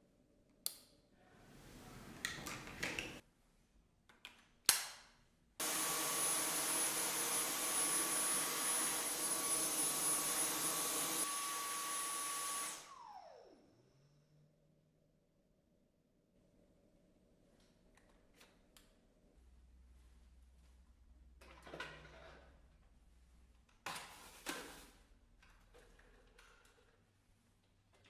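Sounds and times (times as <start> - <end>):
vacuum motor whining: 5.6 - 13.9.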